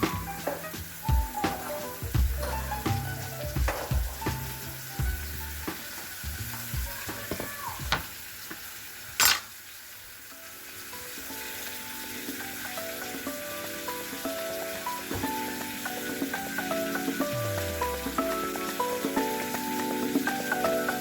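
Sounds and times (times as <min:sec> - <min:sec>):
food sizzling in a frying pan: 0:00.0 - 0:21.0
utensil clicking against pan: 0:09.2 - 0:09.6.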